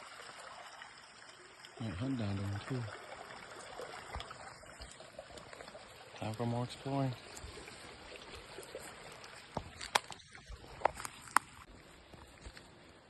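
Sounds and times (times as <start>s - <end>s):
running water: 0.0s - 13.0s
footsteps on a brushy trail: 7.2s - 13.0s
twigs snapping: 9.6s - 11.7s.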